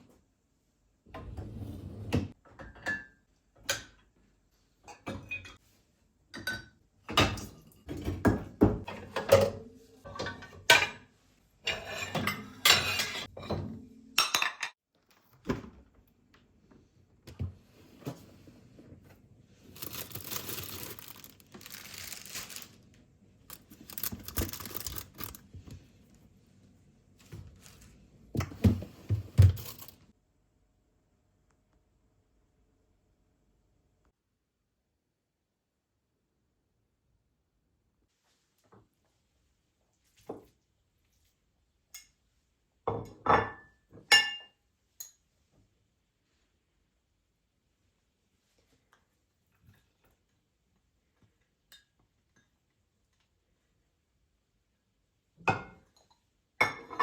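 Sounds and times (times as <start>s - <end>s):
dishes and utensils clattering: 6.4s - 14.8s, 55.5s - 57.0s.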